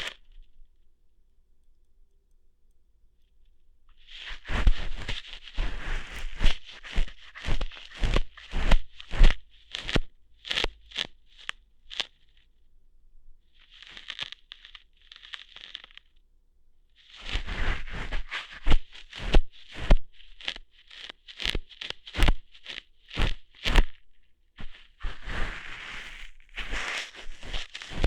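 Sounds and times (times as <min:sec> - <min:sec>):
soft rustles: 0:03.9 - 0:12.4, 0:17.0 - 0:28.0.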